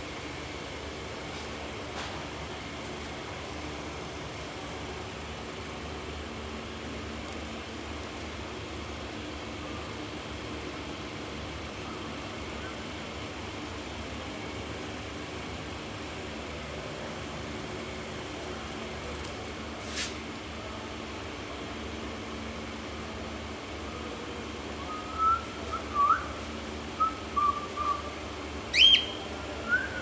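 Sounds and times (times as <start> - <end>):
low background hum: 0.0 - 30.0
cockatiel whistling: 27.0 - 28.1, 28.7 - 30.0.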